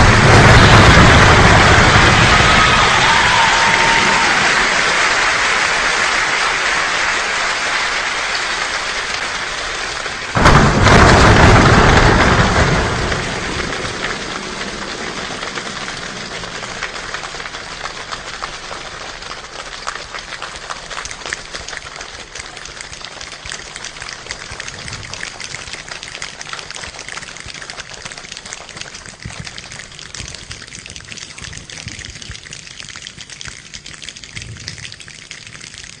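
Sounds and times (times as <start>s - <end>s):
thunder-like crash: 0.0s - 4.9s, 10.4s - 17.3s
rain-like patter of taps: 0.0s - 36.0s.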